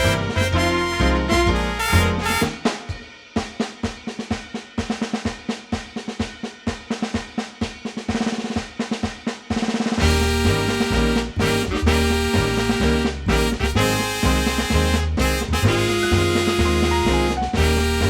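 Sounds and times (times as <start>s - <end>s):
band with brass playing: 0.0s - 3.1s, 10.0s - 18.0s
snare and kit drum hits: 0.0s - 5.4s, 8.1s - 18.0s.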